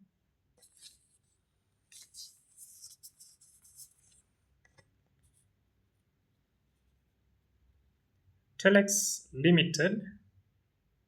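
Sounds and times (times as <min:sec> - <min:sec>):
scratching of writing strokes: 0:00.6 - 0:05.4.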